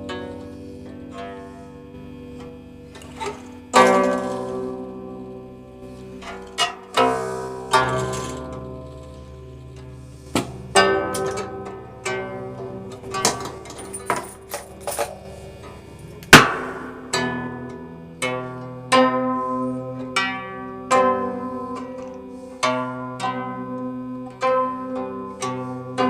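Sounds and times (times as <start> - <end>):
plucked zither music: 0.0 - 26.0
sharp loud string pluck: 16.2 - 17.5.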